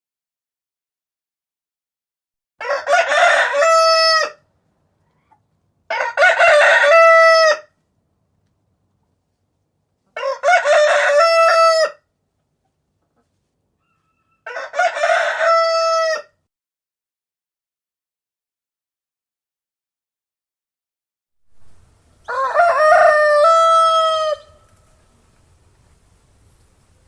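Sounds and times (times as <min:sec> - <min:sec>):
rooster crowing: 0:02.6 - 0:04.4, 0:05.9 - 0:07.7, 0:10.2 - 0:12.0, 0:13.9 - 0:16.4, 0:21.5 - 0:27.0.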